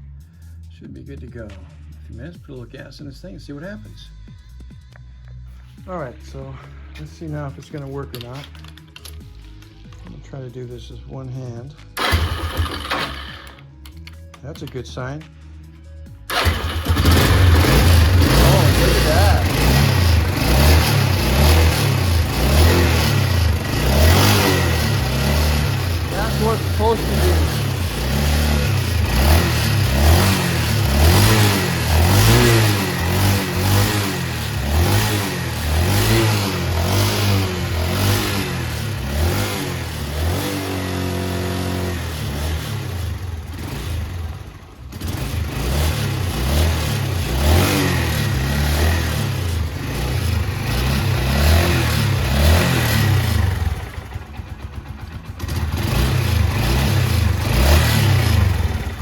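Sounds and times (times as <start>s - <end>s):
motorcycle engine revving: 12.0s - 14.8s, 16.3s - 59.0s.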